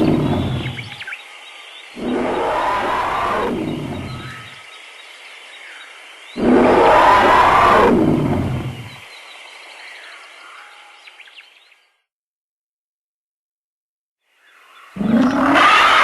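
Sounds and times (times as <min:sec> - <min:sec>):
dinosaur roar: 0:00.0 - 0:01.0, 0:02.0 - 0:04.6, 0:06.4 - 0:09.0, 0:15.0 - 0:16.0
birds chirping: 0:00.0 - 0:12.1, 0:14.3 - 0:16.0.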